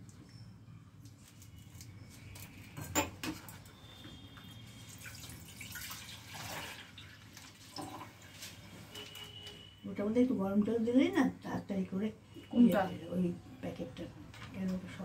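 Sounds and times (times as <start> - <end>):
water dripping and trickling: 3.6 - 9.7.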